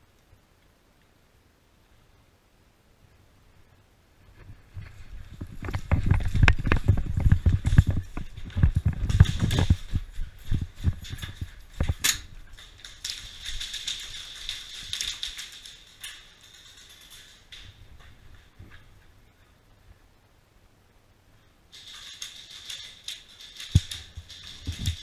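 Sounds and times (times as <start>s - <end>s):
soft steady hiss: 0.0s - 25.0s
gear jostling against microphone: 4.4s - 19.2s, 21.7s - 25.0s.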